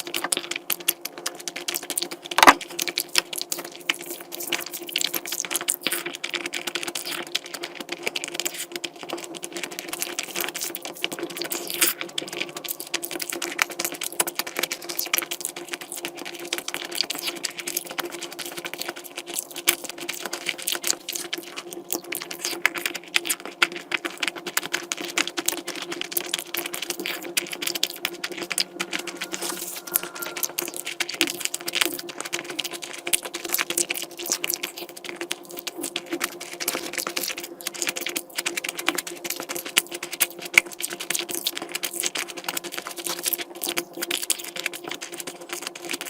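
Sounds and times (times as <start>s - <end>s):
chewing and crunching: 2.7s - 30.2s, 30.8s - 46.0s
steady low hum: 25.6s - 32.4s.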